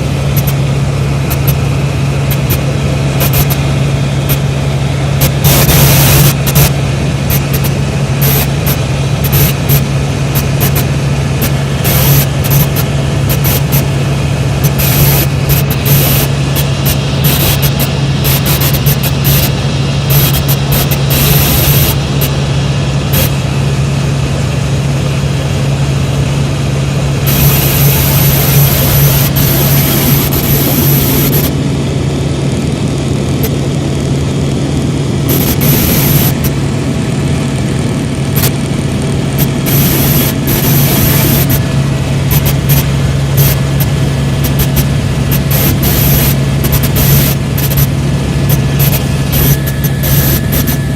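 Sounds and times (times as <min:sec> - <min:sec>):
helicopter drone: 0:00.0 - 0:50.9.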